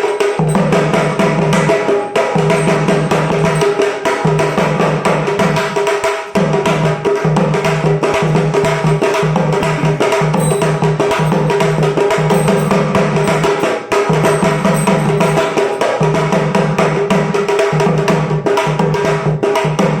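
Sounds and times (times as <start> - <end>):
stick-played drums: 0.0 - 20.0.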